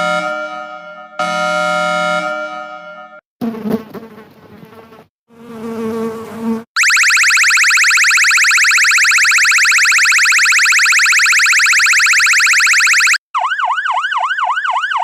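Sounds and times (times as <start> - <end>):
fly buzzing: 3.4 - 6.7
shrill sweeping electronic tone: 6.8 - 13.2.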